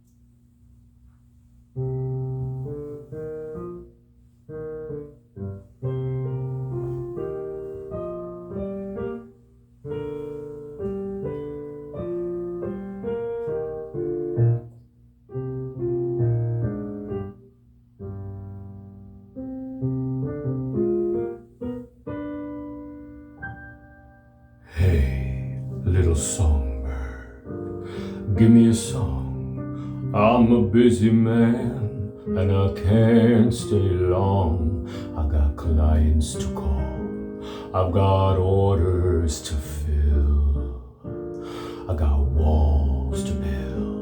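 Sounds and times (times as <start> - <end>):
solo piano playing: 1.7 - 44.0.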